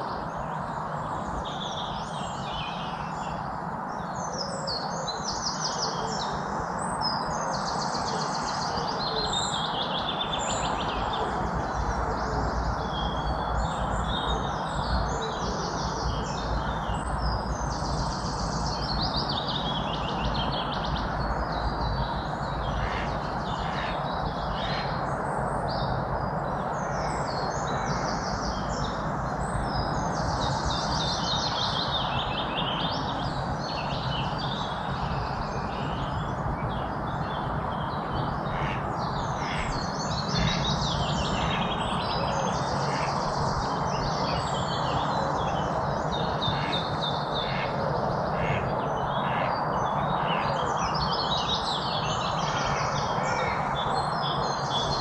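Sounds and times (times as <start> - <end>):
birds singing and chirping: 0.0 - 55.0.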